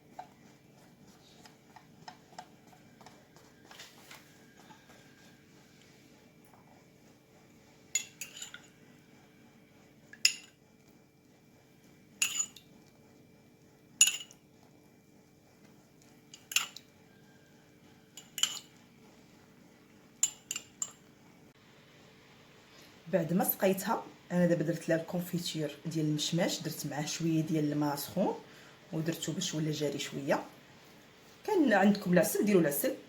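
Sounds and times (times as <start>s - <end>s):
metal utensil clinking on metal: 8.0s - 8.7s, 12.2s - 12.6s, 14.0s - 14.4s, 16.3s - 16.8s, 18.2s - 18.7s.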